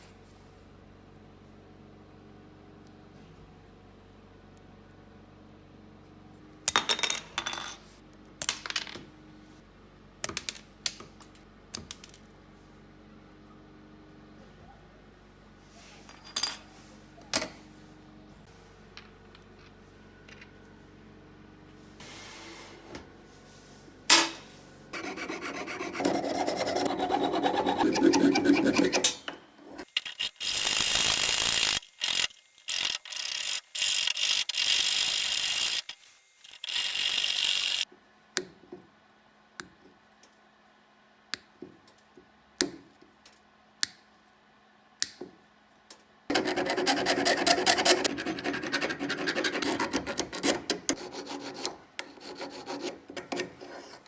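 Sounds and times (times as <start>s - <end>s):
rasping on metal: 25.0s - 29.9s, 46.3s - 54.0s.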